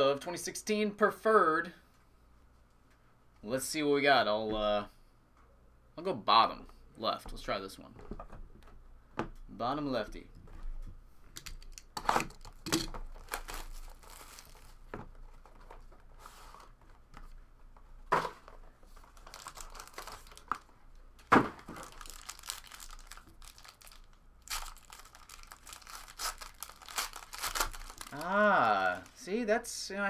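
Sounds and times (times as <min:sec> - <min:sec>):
packaging crinkling and tearing: 0:11.4 - 0:16.7, 0:18.9 - 0:20.8, 0:21.6 - 0:29.2.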